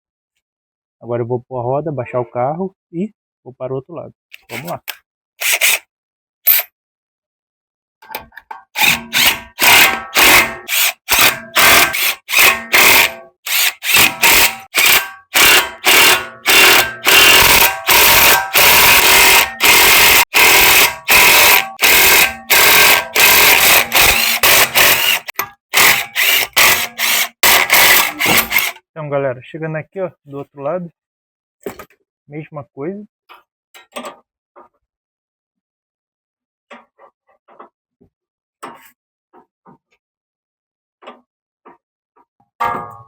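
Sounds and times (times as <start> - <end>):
power tool whining in bursts: 8.8 - 28.8.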